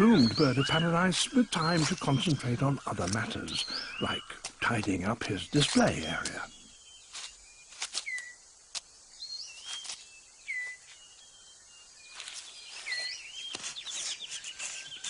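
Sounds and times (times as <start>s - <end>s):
fast run of repeated bird notes: 0.0s - 6.7s
birds whistling: 0.0s - 8.5s, 9.1s - 15.0s.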